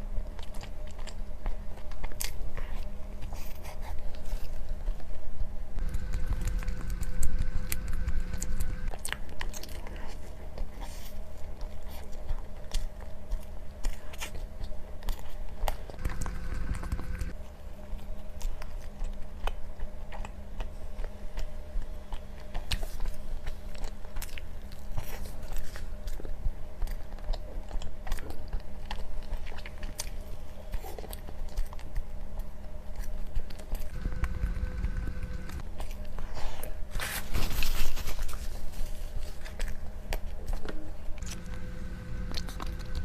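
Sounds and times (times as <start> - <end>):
steady low hum: 0.0 - 27.9, 33.5 - 37.0, 37.6 - 43.0
crunchy chewing of food: 0.0 - 43.0.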